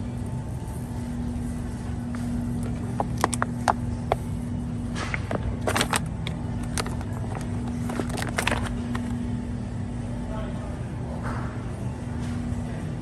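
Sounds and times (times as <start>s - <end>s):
steady hum and low rumble: 0.0s - 13.0s.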